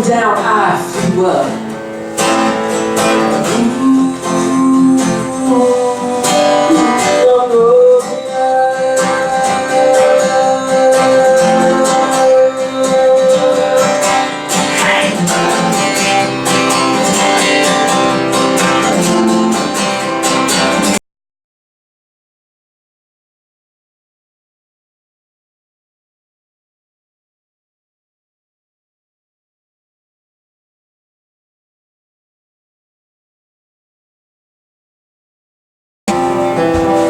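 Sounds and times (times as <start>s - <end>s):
acoustic guitar strumming: 0.0s - 21.0s, 36.1s - 37.0s.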